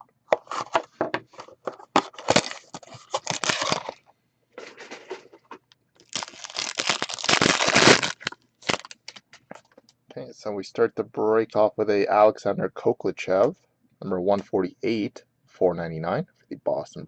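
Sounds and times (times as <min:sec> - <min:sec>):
packaging torn and crinkled: 0:02.0 - 0:04.0, 0:06.0 - 0:09.2.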